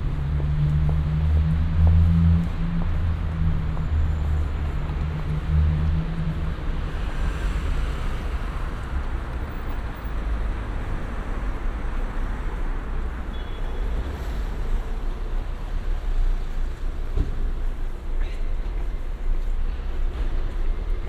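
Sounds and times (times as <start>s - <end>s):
passing vehicle engine hum: 0.0s - 13.2s
car and tyre noise: 0.0s - 21.0s.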